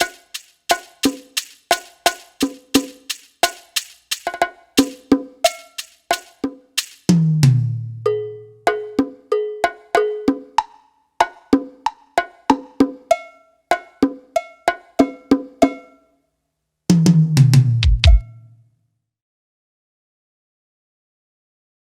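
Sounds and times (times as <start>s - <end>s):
electronic drum hits: 17.8s - 18.3s.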